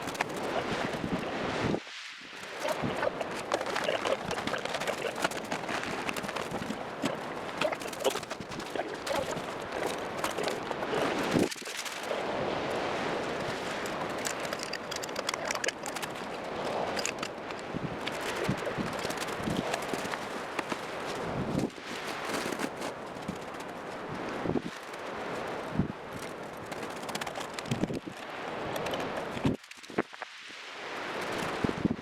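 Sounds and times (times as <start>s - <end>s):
rustling: 0.0s - 1.4s, 2.3s - 24.0s
camp gear clattering and knocking: 2.4s - 12.1s, 13.4s - 23.4s.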